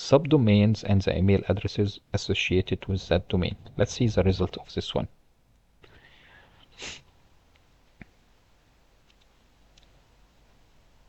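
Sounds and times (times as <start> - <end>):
faint clicks: 9.0 - 10.0.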